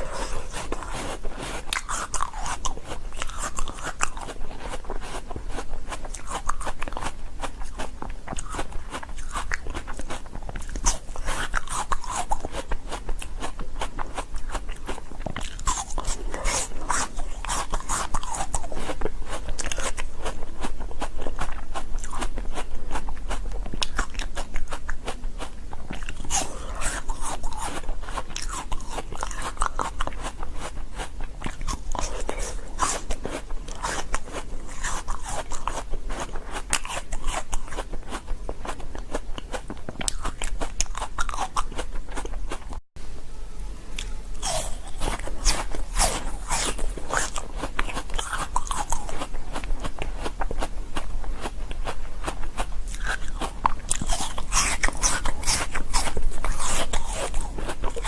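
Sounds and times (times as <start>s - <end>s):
person crunching shaved ice: 0.0s - 42.6s, 44.0s - 58.0s.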